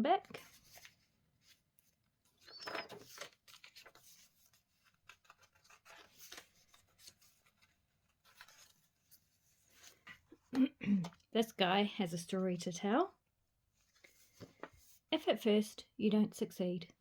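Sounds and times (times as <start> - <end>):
paper rustling: 0.4 - 10.2.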